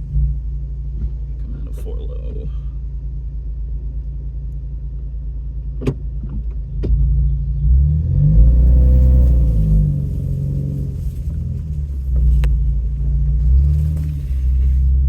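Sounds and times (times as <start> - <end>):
truck engine running: 8.5 - 15.0.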